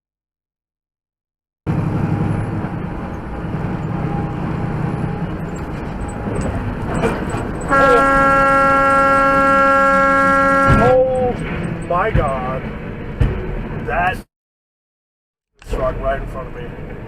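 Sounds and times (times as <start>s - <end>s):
vehicle engine and road noise: 1.7s - 14.3s, 15.6s - 17.0s
vehicle horn long blast: 7.6s - 11.3s.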